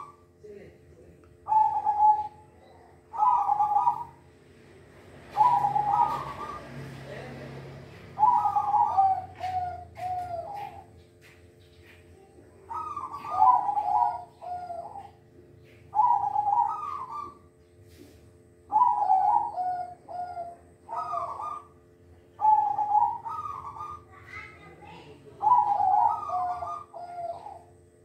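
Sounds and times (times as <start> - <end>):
dove cooing: 0.0 - 0.3, 1.4 - 28.0.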